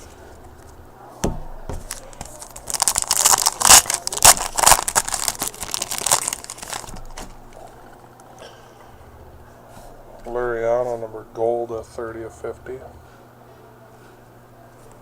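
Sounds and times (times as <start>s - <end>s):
foil wrapper torn and crinkled: 1.9s - 7.3s.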